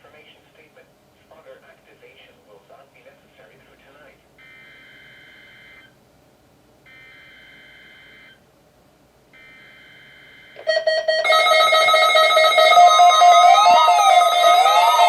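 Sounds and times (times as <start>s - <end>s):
weather radio alert tones: 10.7s - 15.0s
buzzy data tones: 11.2s - 15.0s.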